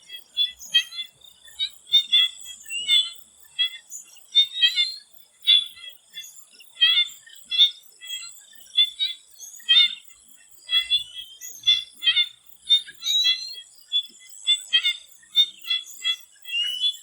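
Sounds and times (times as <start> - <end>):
frogs croaking: 0.0 - 17.0.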